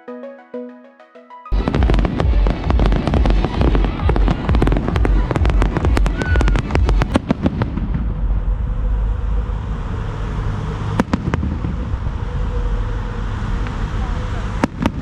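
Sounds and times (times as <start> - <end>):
fireworks crackling bangs: 1.5 - 9.1, 10.7 - 15.0
low rumble: 1.5 - 15.0.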